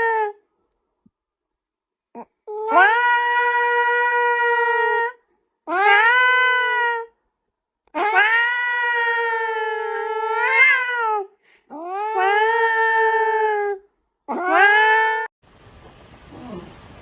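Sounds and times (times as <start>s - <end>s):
cat yowling: 2.5s - 7.1s, 8.0s - 15.3s.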